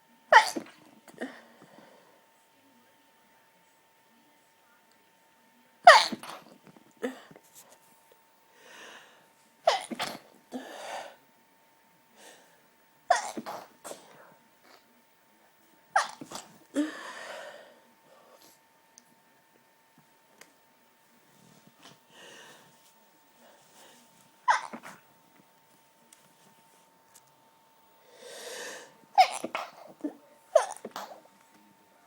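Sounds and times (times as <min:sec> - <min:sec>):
person stifling sneezes: 0:00.3 - 0:01.5, 0:05.9 - 0:07.4, 0:09.7 - 0:11.1, 0:13.1 - 0:14.2, 0:16.0 - 0:17.4, 0:24.4 - 0:25.0, 0:28.6 - 0:31.3.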